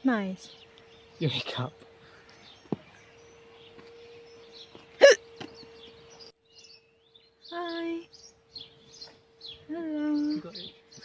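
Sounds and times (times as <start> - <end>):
woman hiccuping: 5.0 - 5.2.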